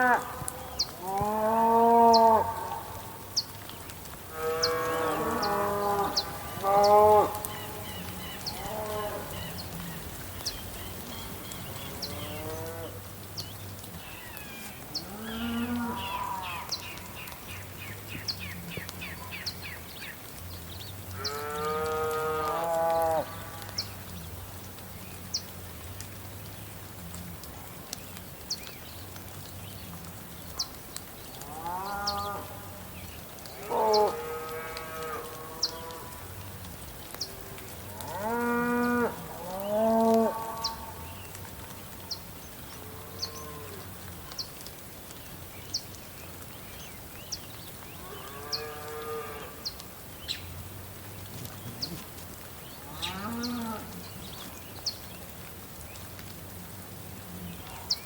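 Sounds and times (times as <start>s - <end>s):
steady rain: 0.0s - 58.0s
cows mooing: 1.0s - 2.9s, 4.3s - 7.8s, 8.5s - 9.4s, 15.0s - 16.5s, 38.0s - 41.0s, 52.9s - 53.9s.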